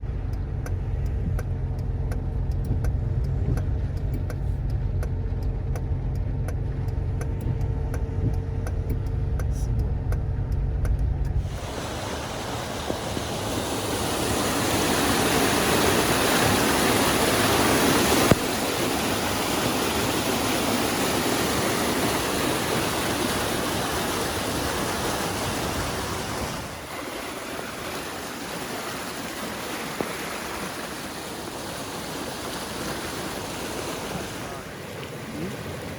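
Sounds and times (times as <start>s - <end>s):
faint regular ticking: 0.0s - 11.5s
low rumble: 0.0s - 13.8s
river rushing: 11.4s - 35.9s.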